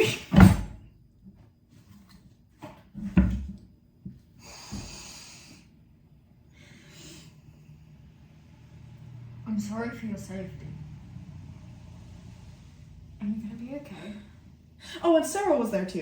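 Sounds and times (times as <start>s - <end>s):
breathy exhales: 4.4s - 5.7s.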